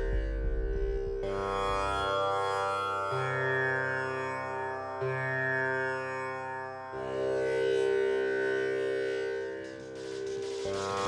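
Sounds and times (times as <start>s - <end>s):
sustained electronic drone chords: 0.0s - 3.2s, 8.7s - 11.0s.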